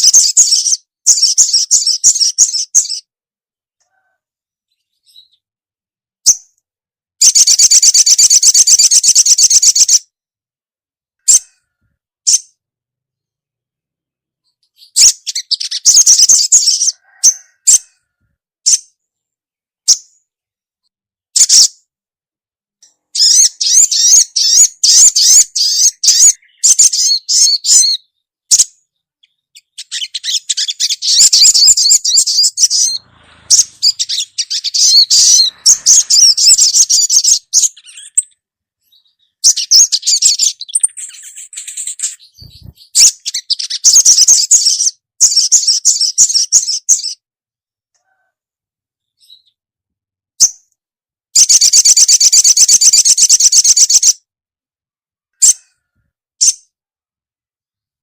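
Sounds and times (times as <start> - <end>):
bird chirping trills: 22.8 - 47.2.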